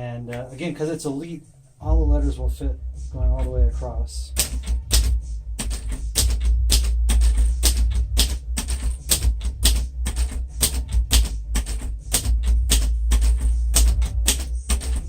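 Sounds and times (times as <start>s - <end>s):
manual typewriter typing: 4.3s - 15.0s.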